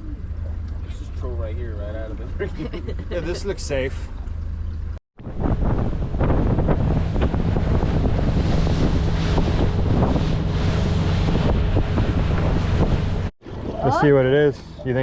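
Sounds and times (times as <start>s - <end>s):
boat motor running: 0.0s - 15.0s
water slapping hull: 2.2s - 14.9s
wind buffeting microphone: 4.6s - 15.0s.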